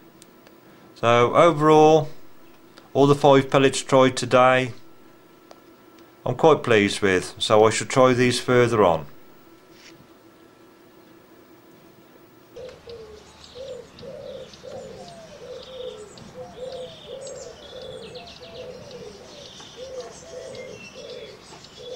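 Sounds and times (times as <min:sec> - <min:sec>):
birds chirping and twittering: 0:12.0 - 0:21.9
low cooing birds: 0:12.5 - 0:21.9.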